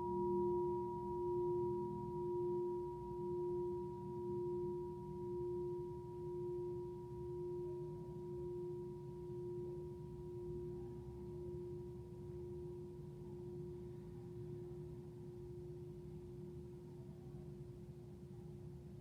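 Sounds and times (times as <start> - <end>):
singing bowl ringing: 0.0 - 14.9.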